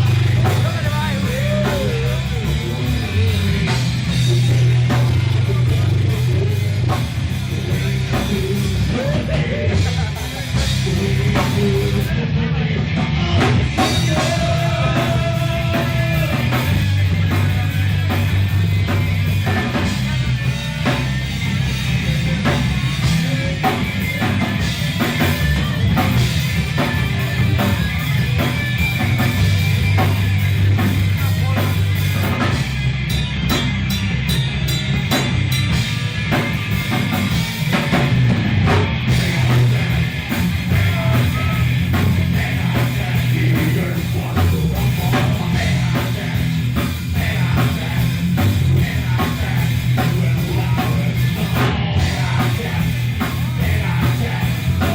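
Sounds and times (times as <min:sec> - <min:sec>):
heavy metal band playing: 0:00.0 - 0:54.9
drum kit hits: 0:13.5 - 0:54.9.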